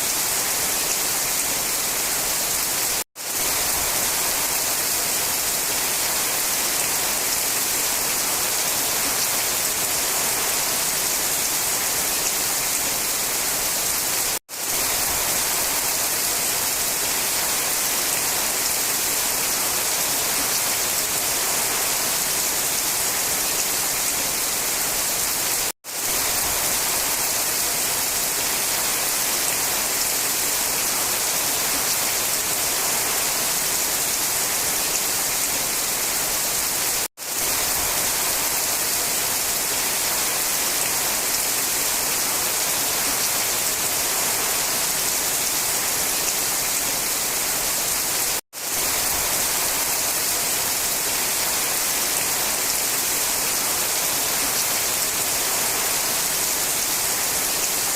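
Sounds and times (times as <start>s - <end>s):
steady rain falling: 0.0s - 57.9s.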